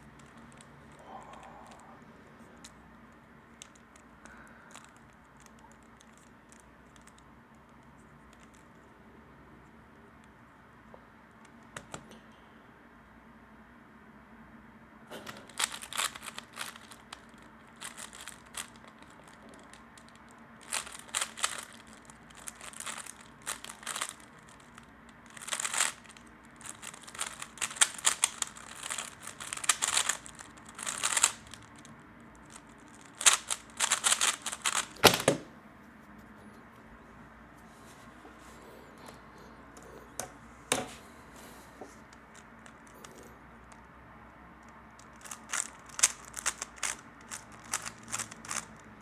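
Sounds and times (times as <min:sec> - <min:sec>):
puzzle cube plastic clicking: 0:00.0 - 0:08.9, 0:11.3 - 0:12.1, 0:15.2 - 0:35.5, 0:44.6 - 0:49.0.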